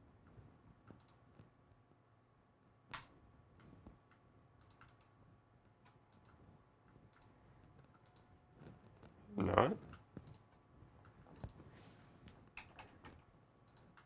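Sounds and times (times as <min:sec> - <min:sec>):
computer mouse clicks: 0:00.9 - 0:01.2, 0:02.9 - 0:05.2, 0:05.8 - 0:06.4, 0:07.1 - 0:08.3, 0:09.9 - 0:11.6, 0:12.3 - 0:14.0.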